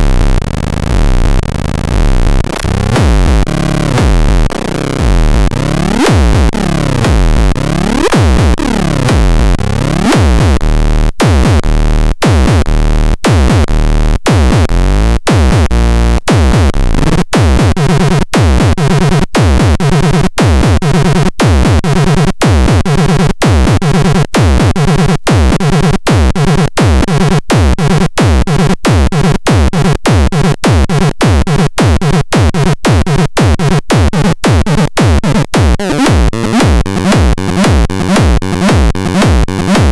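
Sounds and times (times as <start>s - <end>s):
pulsing techno beat: 0.0s - 39.9s.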